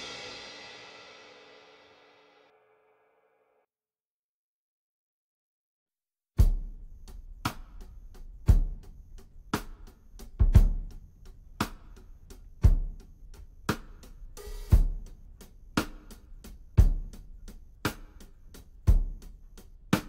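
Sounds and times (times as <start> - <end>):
drum kit beat: 0.0 - 2.2, 6.4 - 20.0.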